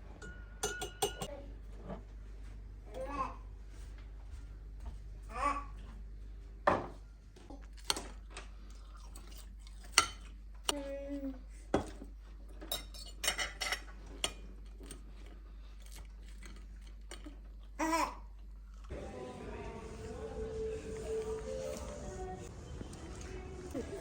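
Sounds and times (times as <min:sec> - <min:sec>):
cutlery and dishes clinking: 0:00.2 - 0:01.3, 0:12.6 - 0:15.3.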